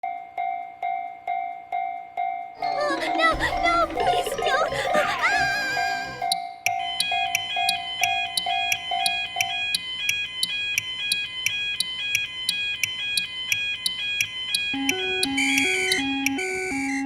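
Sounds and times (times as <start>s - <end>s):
electronic crossing bell dings: 6.2s - 16.8s.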